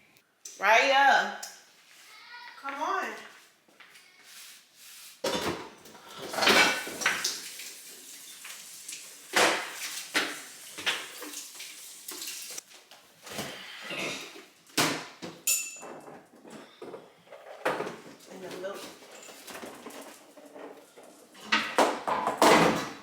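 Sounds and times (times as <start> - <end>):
dishes and utensils clattering: 5.2 - 7.5, 13.9 - 18.2, 18.8 - 23.0.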